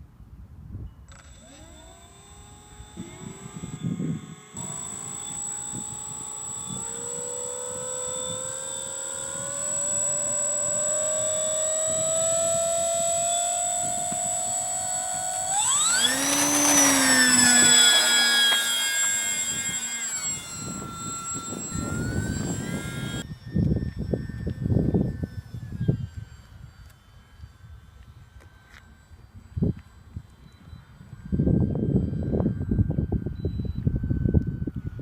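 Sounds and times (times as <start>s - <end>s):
model plane motor whining: 1.0s - 35.0s.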